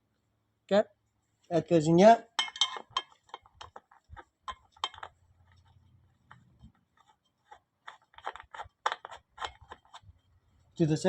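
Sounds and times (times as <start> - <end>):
metal parts clicking and tapping: 2.4 - 10.2.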